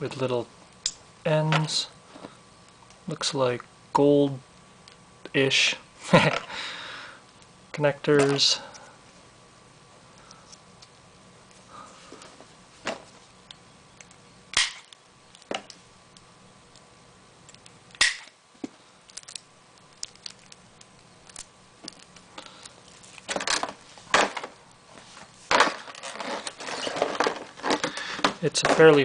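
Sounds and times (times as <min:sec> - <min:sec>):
cable rustling: 0:18.6 - 0:29.0.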